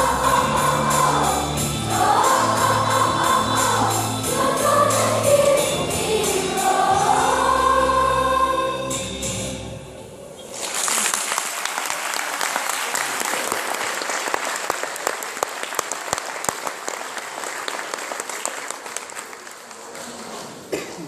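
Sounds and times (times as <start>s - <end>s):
audience clapping: 10.5s - 20.4s.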